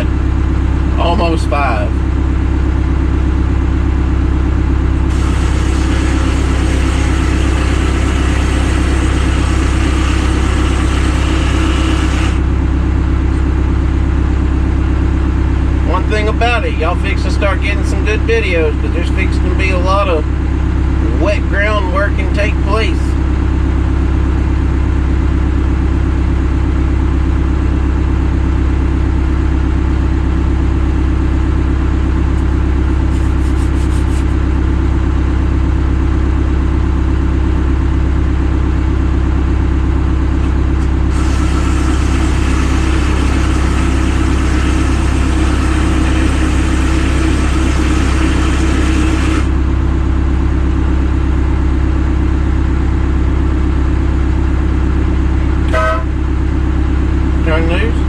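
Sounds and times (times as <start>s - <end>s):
vehicle engine droning: 0.0s - 58.0s
loud hiss: 5.1s - 12.4s.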